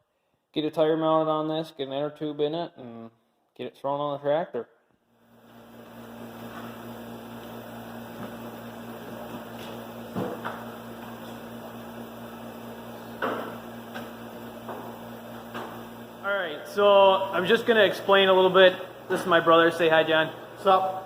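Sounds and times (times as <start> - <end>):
machine hum with low drone: 5.1 - 21.0.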